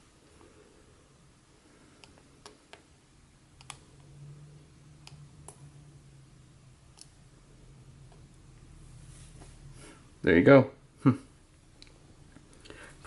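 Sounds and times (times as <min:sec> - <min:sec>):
faint low hum: 0:00.0 - 0:13.0
smartphones clicking together: 0:03.6 - 0:03.9.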